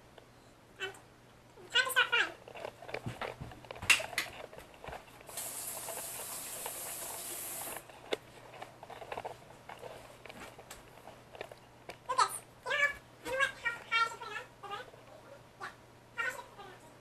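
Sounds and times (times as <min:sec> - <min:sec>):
steady spray hiss: 0:05.2 - 0:07.9.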